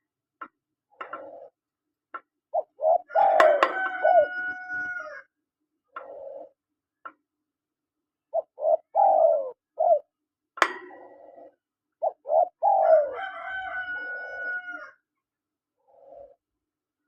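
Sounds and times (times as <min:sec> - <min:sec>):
dove cooing: 0:00.9 - 0:01.6, 0:02.5 - 0:05.3, 0:05.9 - 0:06.6, 0:08.3 - 0:14.9, 0:15.8 - 0:16.5.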